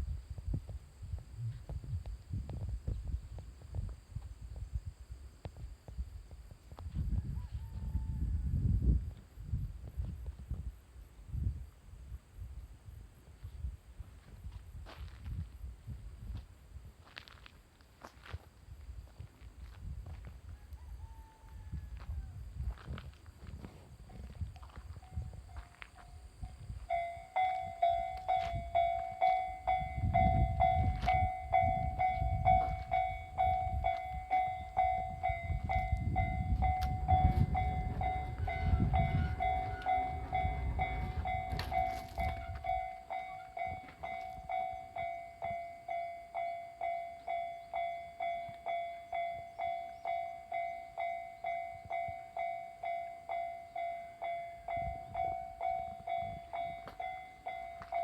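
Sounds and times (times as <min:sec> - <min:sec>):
train rumbling: 0:22.1 - 0:50.1
level-crossing bell ringing: 0:26.8 - 0:58.0.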